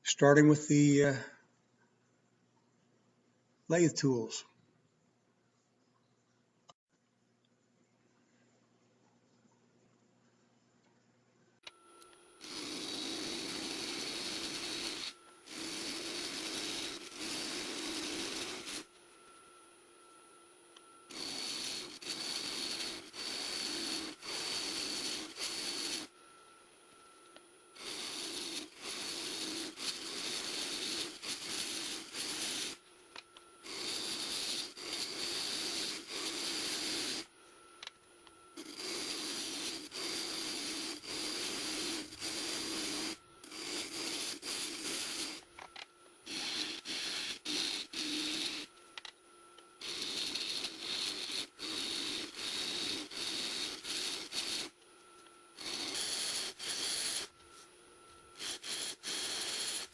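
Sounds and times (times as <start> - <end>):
faint lathe whine: 10.5 - 59.9
lathe gouge scraping antler: 12.3 - 26.3, 26.9 - 59.9.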